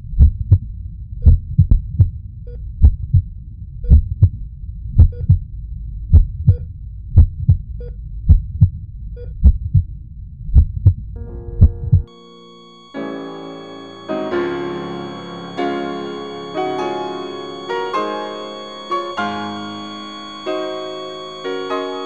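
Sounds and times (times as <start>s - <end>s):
heartbeat thumps: 0.0s - 2.2s, 2.8s - 12.1s
steady low rumble: 0.0s - 12.1s.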